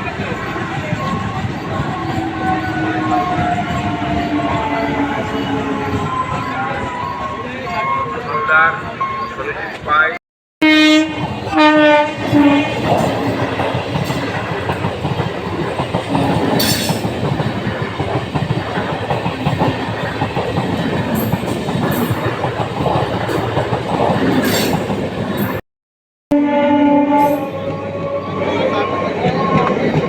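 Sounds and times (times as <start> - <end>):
train rumbling along track: 0.0 - 10.0, 11.0 - 25.6, 26.7 - 30.0
train horn blasts: 10.6 - 13.4, 26.3 - 28.4.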